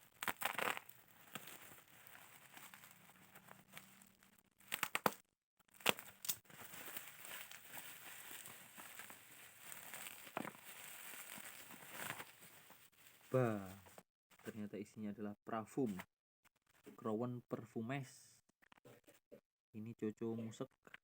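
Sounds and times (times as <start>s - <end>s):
sharp tearing crackles: 0.0s - 12.4s
packaging crinkling and rustling: 0.0s - 13.9s.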